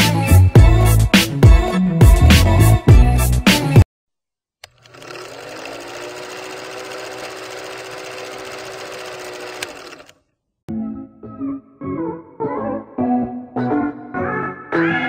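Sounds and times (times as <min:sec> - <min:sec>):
music: 0:00.0 - 0:03.8, 0:10.7 - 0:15.0
click: 0:04.6 - 0:05.0
small motor whirring: 0:04.6 - 0:10.2.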